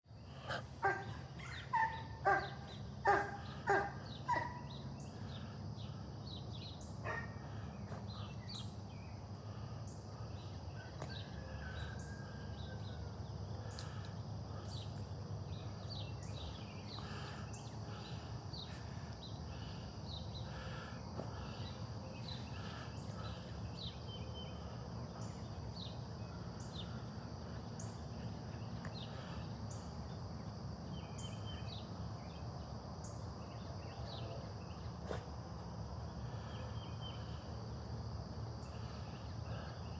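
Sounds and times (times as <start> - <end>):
steady low hum: 0.1 - 39.9
birds chirping: 0.3 - 12.2, 13.6 - 30.1.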